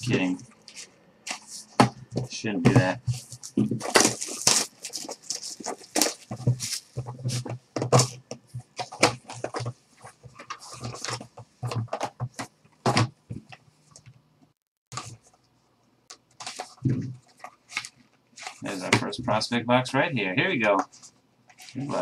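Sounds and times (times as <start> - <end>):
card boxes knocking and rustling: 1.3 - 13.6, 16.4 - 19.2.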